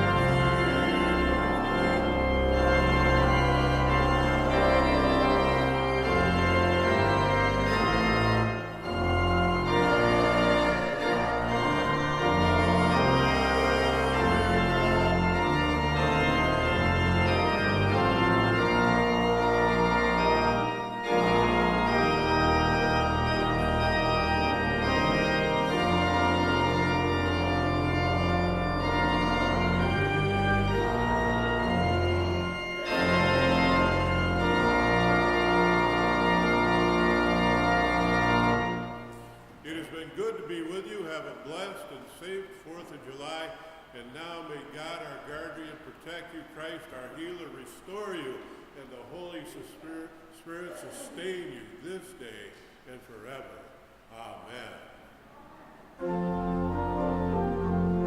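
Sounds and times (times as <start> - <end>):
deep organ pedal bass: 0.0 - 41.6, 56.0 - 58.0
church organ chords: 0.0 - 58.0.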